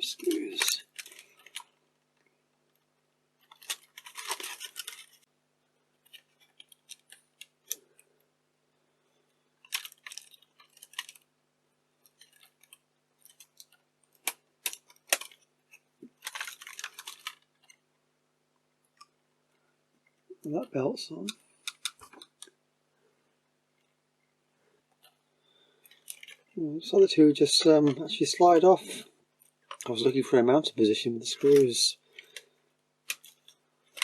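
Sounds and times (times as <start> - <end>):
plastic parts scraping and rattling: 0.0 - 1.8, 3.4 - 5.3, 6.0 - 8.0, 9.6 - 11.3, 12.0 - 17.8, 21.6 - 22.5, 25.8 - 26.6, 29.4 - 30.0, 31.3 - 34.0
sharp plastic clicks: 21.3 - 22.5.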